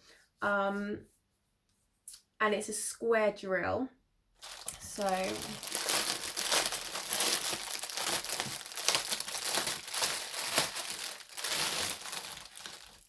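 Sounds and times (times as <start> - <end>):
packaging crinkling: 4.4 - 13.0.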